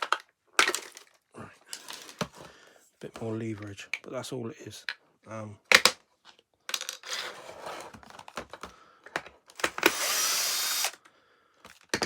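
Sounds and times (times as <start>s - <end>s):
hard plastic clicking and scraping: 7.7s - 10.0s
loud hiss: 10.0s - 11.0s.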